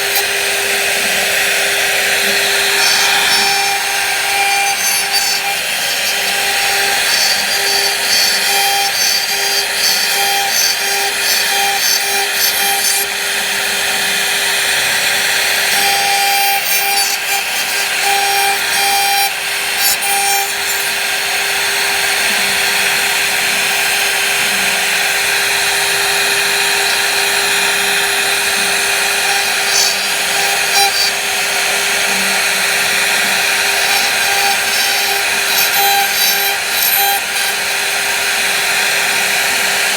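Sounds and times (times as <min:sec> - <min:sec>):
power tool cutting wood: 0:00.0 - 0:39.9.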